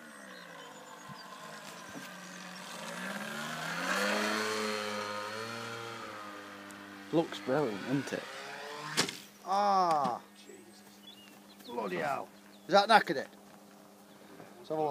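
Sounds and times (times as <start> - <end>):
model plane motor droning: 0.0 - 9.3.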